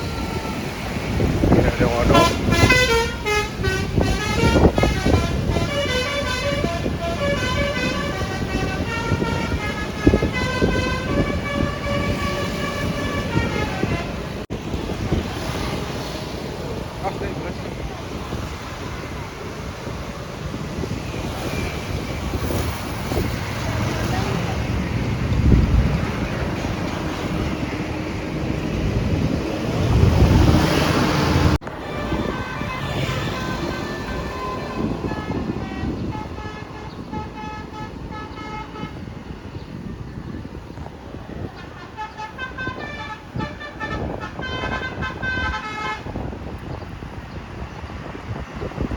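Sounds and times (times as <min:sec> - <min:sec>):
traffic noise: 0:00.0 - 0:48.9
vehicle noise: 0:00.0 - 0:48.9
wind buffeting microphone: 0:00.0 - 0:48.9
multi-tone air horn melody: 0:01.7 - 0:14.4, 0:31.8 - 0:39.0, 0:41.6 - 0:46.1.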